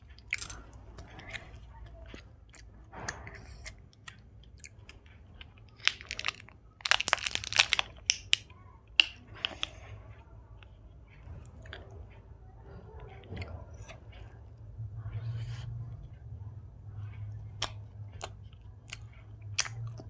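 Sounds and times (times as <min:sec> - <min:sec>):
close chewing and mouth sounds: 0:00.0 - 0:20.0
crisp crunching clicks: 0:05.7 - 0:09.7.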